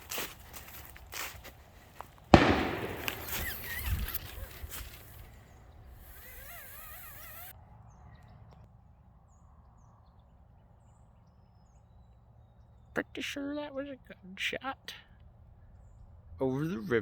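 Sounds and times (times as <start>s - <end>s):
shotgun shot with echo: 2.3s - 4.2s.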